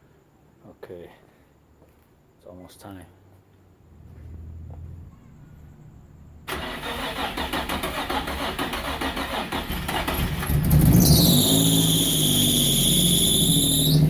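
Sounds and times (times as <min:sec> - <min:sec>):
car engine cranking and starting: 0:06.4 - 0:14.0
high falling turbo whine: 0:10.8 - 0:14.0.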